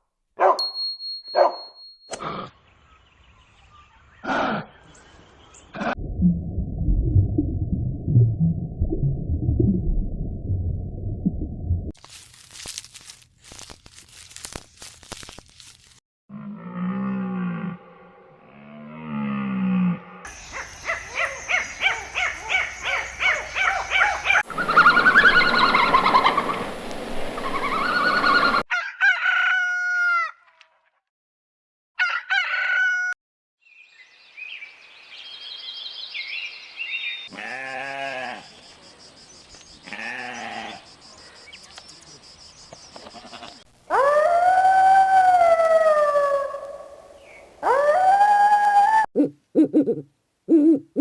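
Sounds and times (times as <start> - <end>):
rooster crowing: 28.7 - 30.4, 32.0 - 33.2
dog howling: 43.9 - 49.1.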